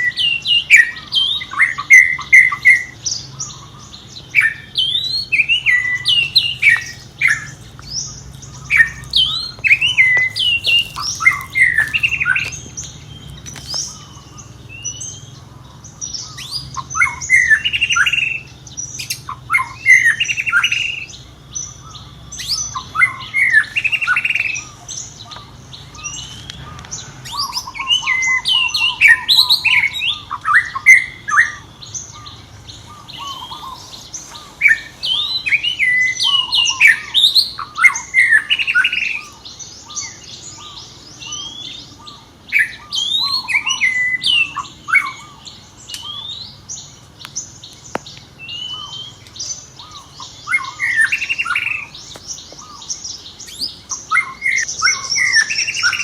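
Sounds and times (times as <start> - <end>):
baby monkey squealing and chirping: 4.4 - 14.6, 52.6 - 56.0.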